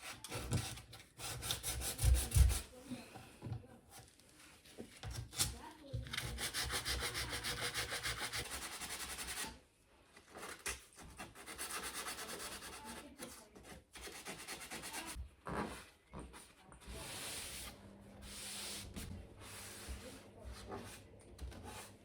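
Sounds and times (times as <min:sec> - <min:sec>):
sandpaper rubbing on wood: 0:06.2 - 0:09.5, 0:11.2 - 0:13.0, 0:14.0 - 0:15.2.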